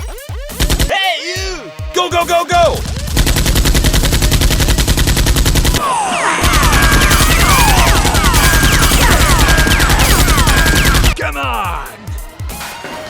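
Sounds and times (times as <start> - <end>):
rapid automatic gunfire: 0.5 - 0.9, 2.8 - 5.8, 6.4 - 11.2.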